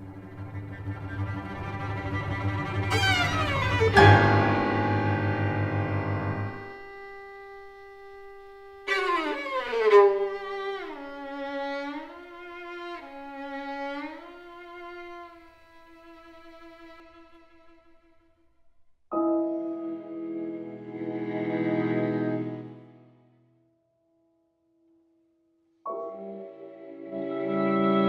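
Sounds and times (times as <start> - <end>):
solo bowed strings: 0.0 - 18.5.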